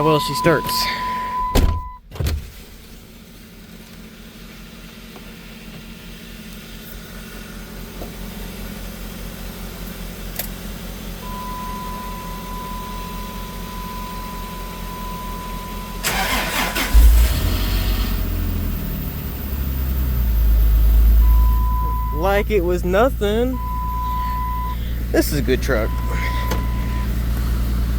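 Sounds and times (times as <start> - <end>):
steady high beep: 0.0 - 2.0, 11.2 - 16.0, 21.2 - 27.1
truck engine idling: 0.0 - 2.0, 3.0 - 27.9.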